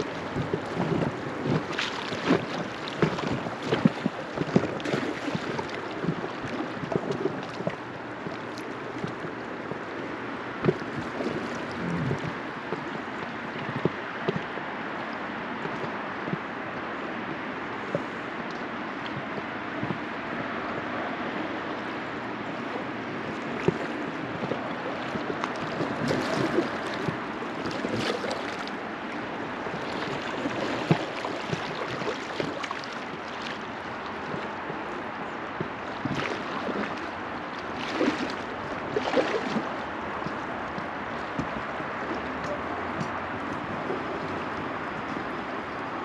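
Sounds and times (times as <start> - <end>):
river water rushing and lapping: 0.0 - 46.0
small water splashes: 0.0 - 46.0.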